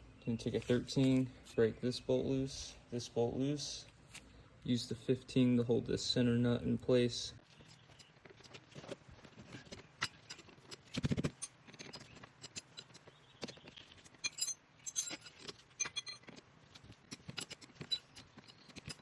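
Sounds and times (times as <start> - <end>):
metallic clicks of wrenches: 7.6 - 19.0.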